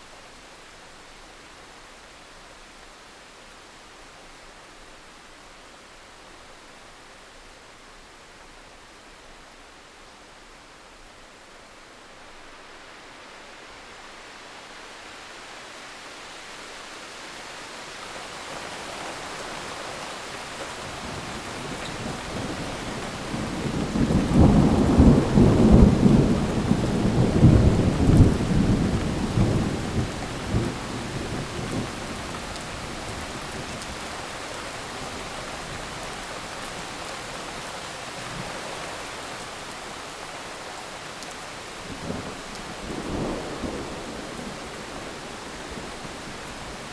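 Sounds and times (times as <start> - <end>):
steady rain: 0.0 - 46.9
thunder rumbling: 20.8 - 33.8.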